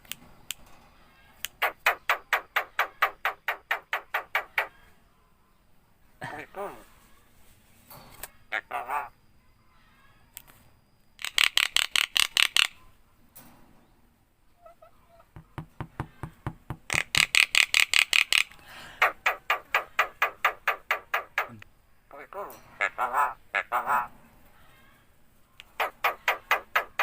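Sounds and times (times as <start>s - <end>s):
bird rattling chatter: 1.5s - 4.7s, 11.2s - 13.5s, 16.9s - 21.6s, 25.6s - 27.0s.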